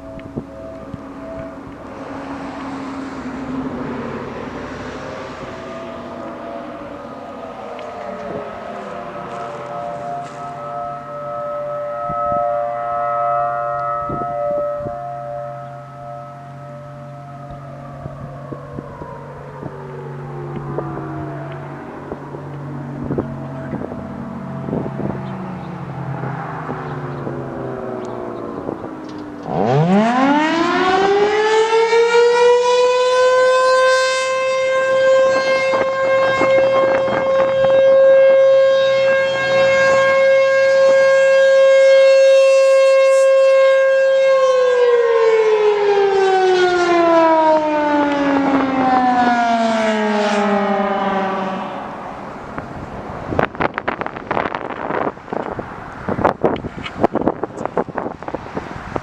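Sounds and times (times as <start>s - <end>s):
outdoor warning siren: 0.0s - 59.0s.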